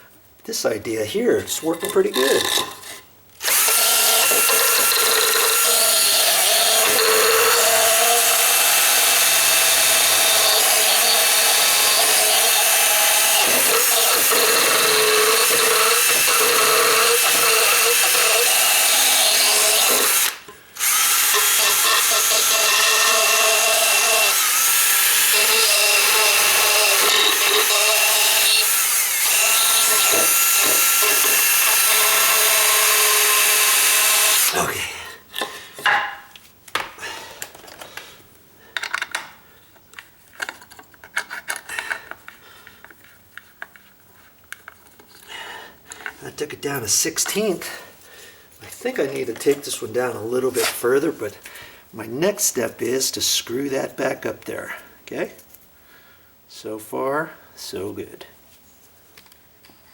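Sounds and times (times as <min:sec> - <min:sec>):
power tool filing: 0:03.4 - 0:34.9.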